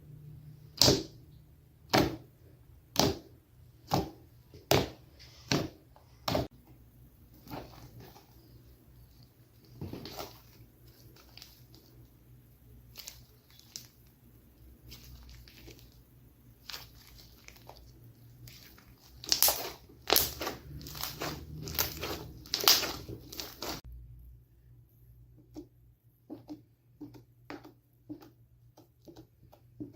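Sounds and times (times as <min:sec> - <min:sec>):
slime crackling and popping: 0:14.8 - 0:23.8.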